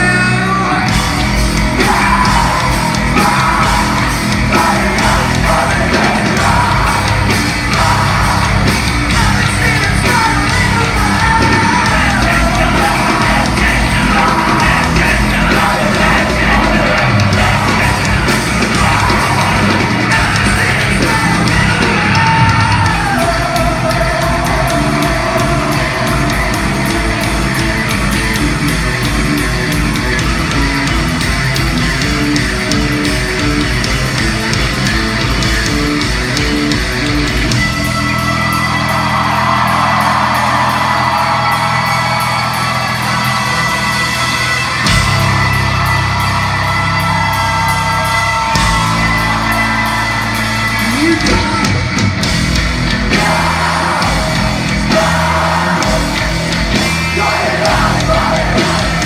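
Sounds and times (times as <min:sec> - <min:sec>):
person singing and yelling: 0:00.0 - 0:27.4, 0:53.0 - 0:59.0
rock band playing: 0:00.0 - 0:59.0.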